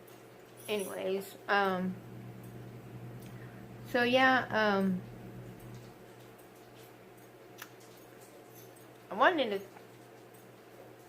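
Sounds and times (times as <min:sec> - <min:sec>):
low electrical hum: 0:00.0 - 0:11.0
faint chewing: 0:05.0 - 0:11.0.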